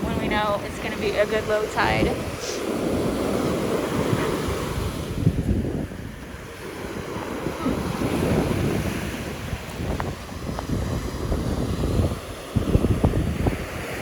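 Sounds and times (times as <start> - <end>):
surf washing onto beach: 0.0 - 14.0
wind buffeting microphone: 0.0 - 14.0.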